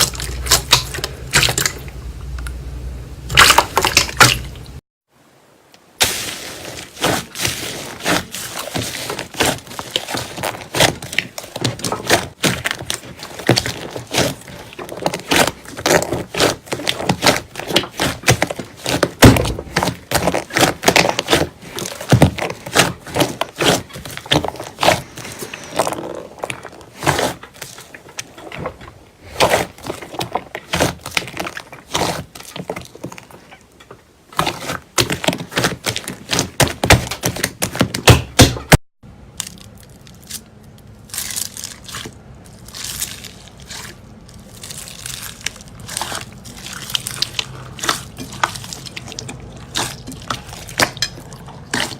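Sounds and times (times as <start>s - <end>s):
slime crackling and popping: 6.0s - 33.6s, 34.3s - 38.7s, 39.3s - 51.9s
heavy thud: 19.2s - 20.0s.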